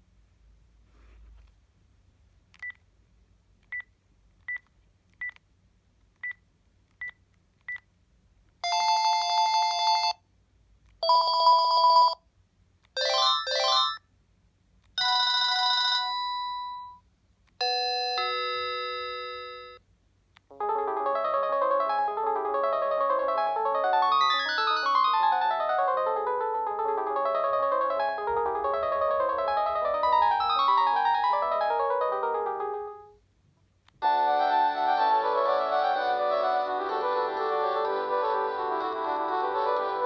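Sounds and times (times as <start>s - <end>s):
phone ringtones: 13.0s - 14.0s, 17.6s - 19.8s.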